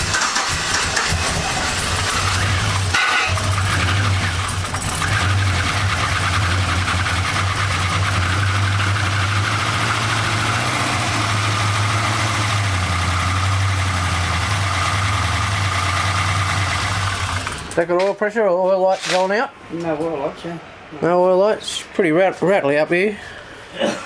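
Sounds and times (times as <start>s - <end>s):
engine top end rattling: 0.0s - 7.7s
car engine idling: 0.0s - 17.8s.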